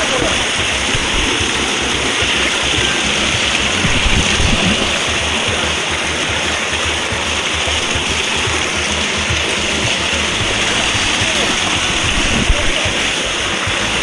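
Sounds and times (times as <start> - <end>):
waterfall rushing: 0.0 - 14.0.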